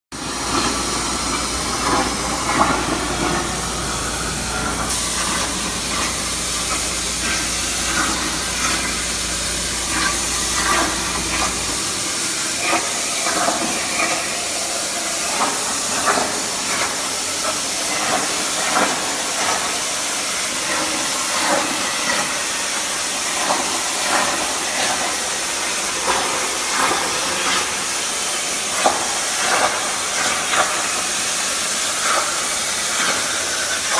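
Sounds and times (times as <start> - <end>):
low hum: 0.2 - 12.6
plasma cutter hissing: 0.2 - 20.2.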